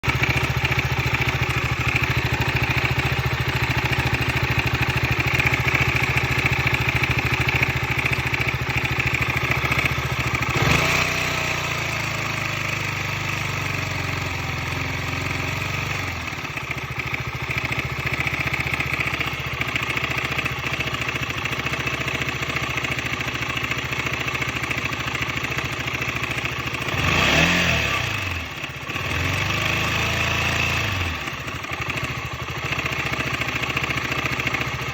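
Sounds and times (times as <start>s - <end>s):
motorcycle engine idling with clatter: 0.0s - 34.9s
engine revving: 9.4s - 12.4s, 26.8s - 31.4s.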